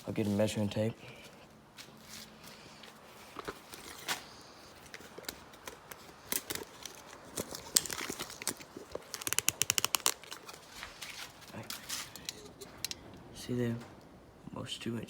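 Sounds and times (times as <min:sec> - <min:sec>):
handling clicks and knocks: 0:03.3 - 0:10.8, 0:11.7 - 0:13.0.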